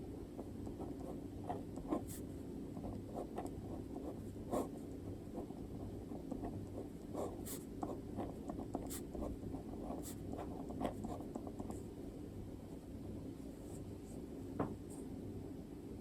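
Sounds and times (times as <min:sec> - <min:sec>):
pen scratching on paper: 0:00.4 - 0:11.9.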